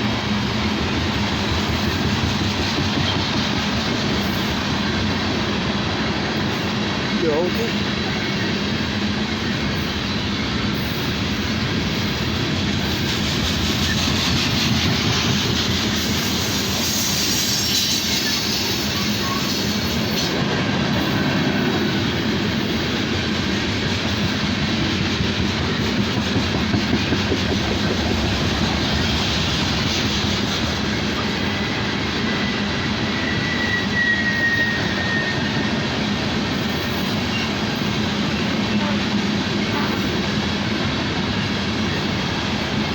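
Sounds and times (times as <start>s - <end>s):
train wheels rumbling on rails: 0.0s - 42.9s
thin wheel squeal: 33.1s - 35.7s.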